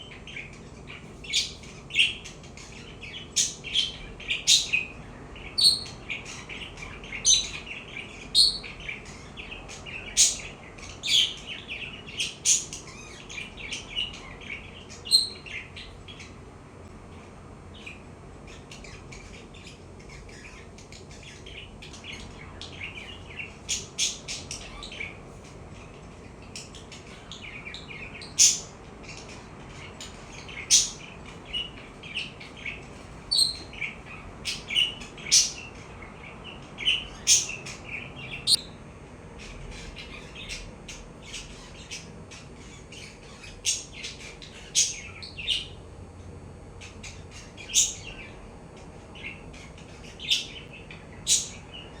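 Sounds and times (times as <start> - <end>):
budgerigar chirping and warbling: 0.0 - 16.4, 25.8 - 38.7, 46.8 - 48.3, 49.2 - 52.0.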